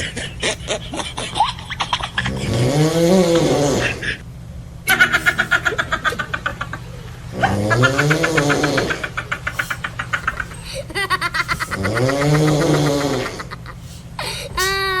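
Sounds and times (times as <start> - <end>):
person snoring: 2.2 - 4.0, 11.8 - 13.5.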